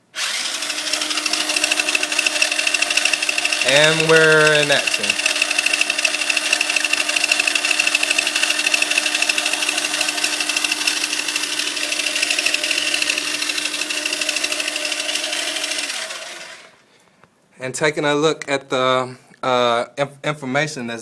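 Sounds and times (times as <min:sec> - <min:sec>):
toy car motors whirring: 0:00.0 - 0:16.8.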